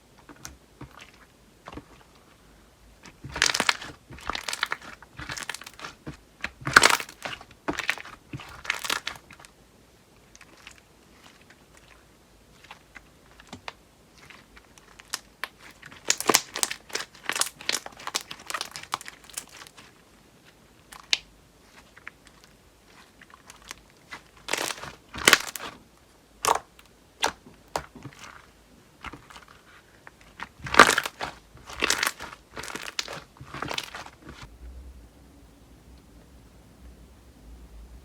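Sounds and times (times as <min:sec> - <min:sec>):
slime crackling and popping: 0:03.0 - 0:09.3, 0:14.2 - 0:19.9, 0:22.9 - 0:25.8, 0:26.4 - 0:28.4, 0:30.3 - 0:34.5.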